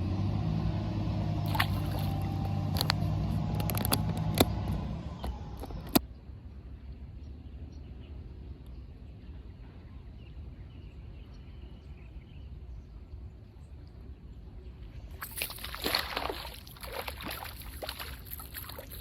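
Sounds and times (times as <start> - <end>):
engine hum: 0.0 - 6.6, 14.3 - 19.0
outdoor ambience: 0.0 - 19.0
sharp clicks and knocks: 2.4 - 6.0.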